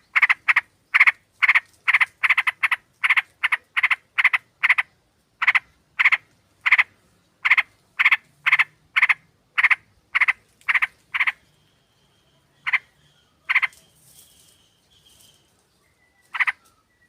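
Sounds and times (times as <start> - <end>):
bulbul harsh rasping calls: 0.0 - 15.5, 16.2 - 16.8.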